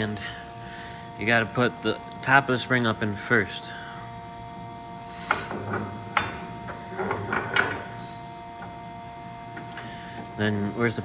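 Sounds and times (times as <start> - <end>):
steady hum: 0.0 - 11.0
coil spring clanking and rattling: 5.2 - 8.8.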